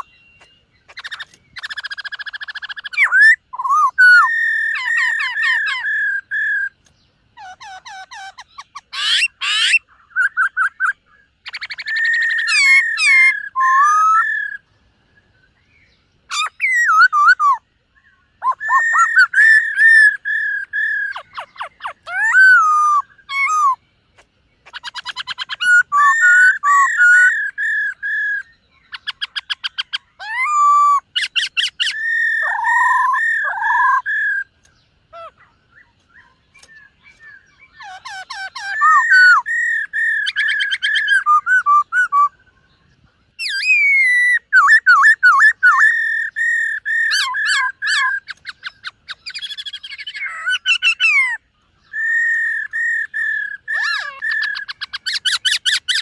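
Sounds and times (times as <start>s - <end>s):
bird whistling and trilling: 0.0s - 23.9s, 24.6s - 56.0s.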